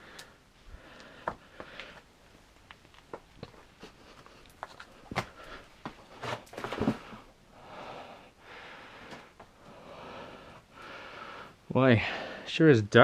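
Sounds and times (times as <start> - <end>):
person breathing: 0.0 - 2.1, 3.8 - 12.5
footsteps on loose rock: 3.0 - 7.2.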